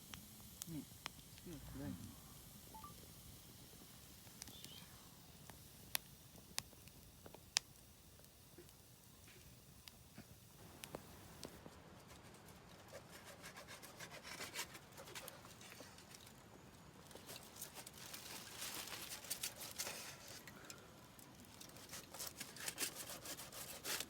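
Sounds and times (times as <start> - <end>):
sharp pops and snaps: 0.0 - 1.6, 2.4 - 11.6
campfire crackling: 0.0 - 24.0.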